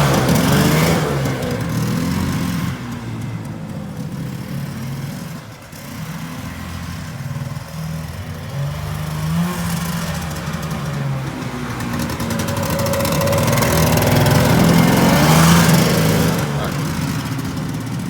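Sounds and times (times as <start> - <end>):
snowmobile engine running: 0.0 - 18.0.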